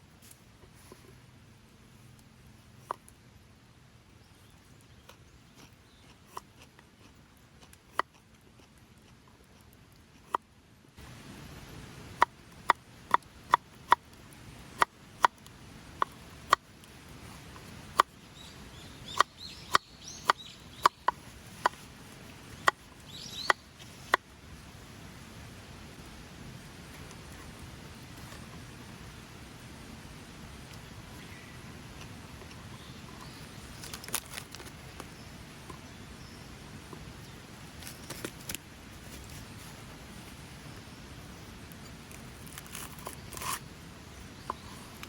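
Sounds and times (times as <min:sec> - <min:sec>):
bird chirping: 0:18.2 - 0:21.2, 0:22.5 - 0:23.8.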